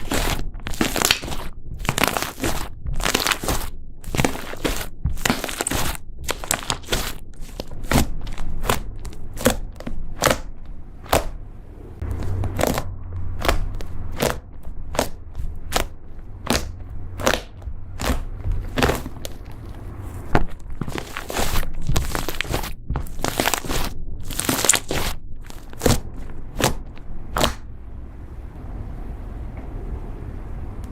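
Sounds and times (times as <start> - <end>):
slime crackling pops: 0.0 - 8.8.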